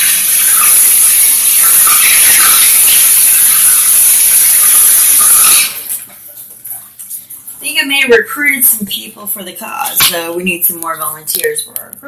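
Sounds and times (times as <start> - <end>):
water running from a tap: 0.0 - 7.7.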